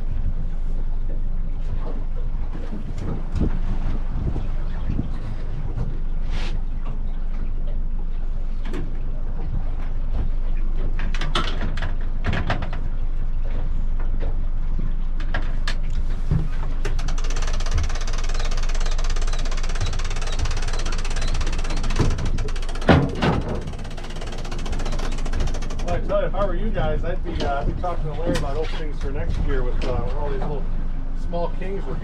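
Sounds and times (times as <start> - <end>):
boat engine running: 0.0 - 32.0
clicks and knocks: 16.8 - 25.9.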